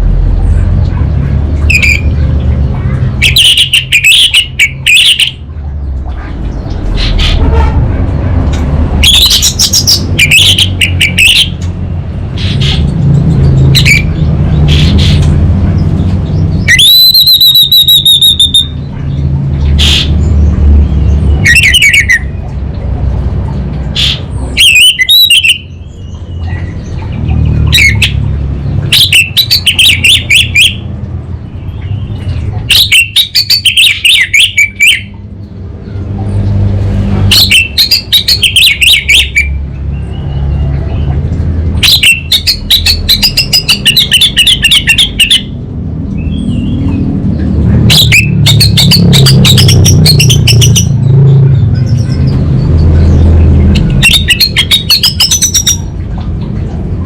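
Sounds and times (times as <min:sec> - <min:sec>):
steady low hum: 0:00.0 - 0:16.7.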